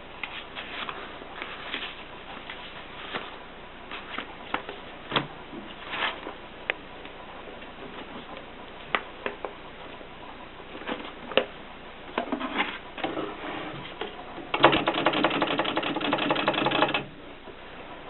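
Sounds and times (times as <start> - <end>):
typewriter mechanism clicking: 14.5 - 17.1.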